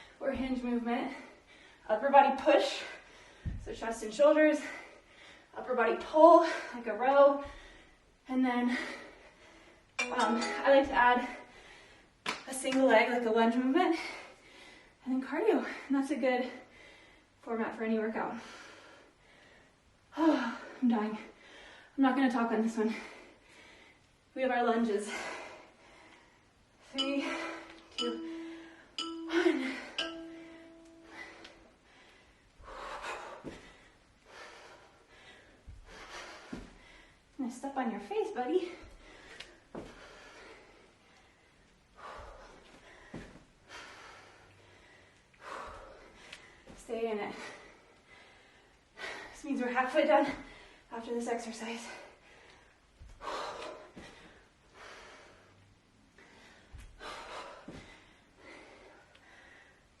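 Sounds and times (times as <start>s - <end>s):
woman breathing hard: 22.9s - 24.3s, 27.3s - 37.3s, 38.7s - 49.4s, 51.8s - 60.0s.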